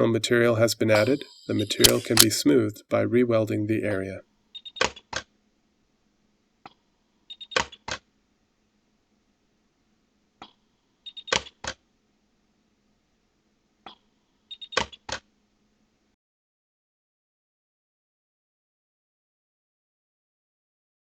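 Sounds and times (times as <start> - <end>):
faint click: 1.7 - 2.3.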